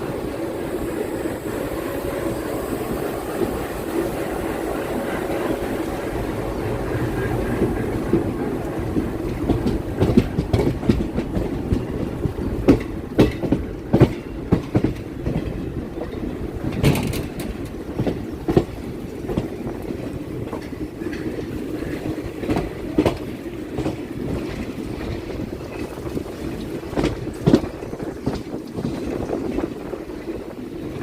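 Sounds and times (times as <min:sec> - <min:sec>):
electric train rumbling: 0:00.0 - 0:31.0
wheels clattering over track: 0:07.5 - 0:30.3.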